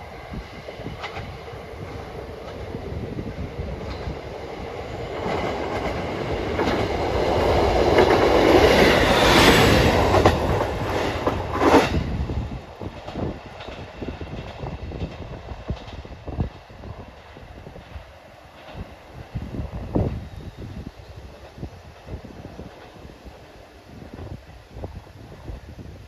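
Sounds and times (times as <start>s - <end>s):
wheels clacking over rail joints: 0.0s - 16.7s
diesel train engine: 0.0s - 24.8s.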